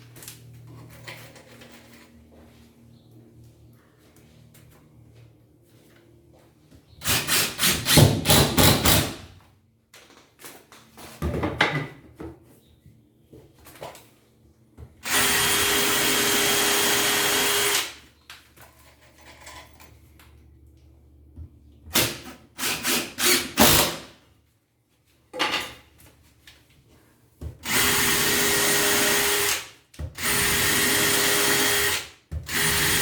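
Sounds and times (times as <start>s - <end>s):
power drill running: 15.0s - 18.0s, 22.6s - 24.0s, 27.6s - 33.0s.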